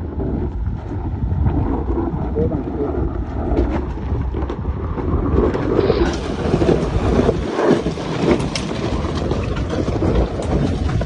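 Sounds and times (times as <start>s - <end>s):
caravan rumbling over rough ground: 0.0s - 11.0s
wind buffeting microphone: 0.0s - 11.0s
knocks and rattles: 3.6s - 11.0s.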